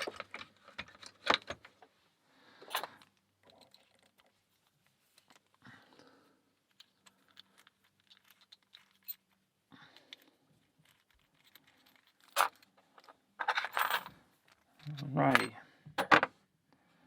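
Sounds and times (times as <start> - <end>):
metal keys and padlock clicking: 2.7 - 4.3, 6.7 - 9.4, 10.0 - 16.2.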